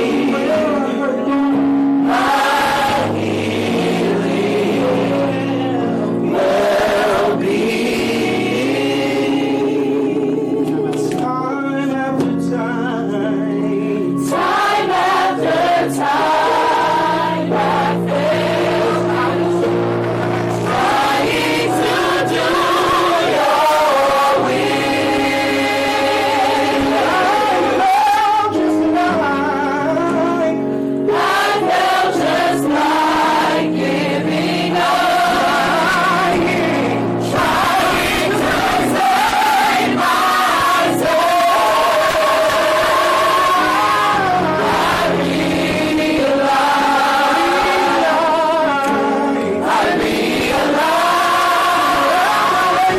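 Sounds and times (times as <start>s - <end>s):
gospel choir singing: 0.0s - 52.9s.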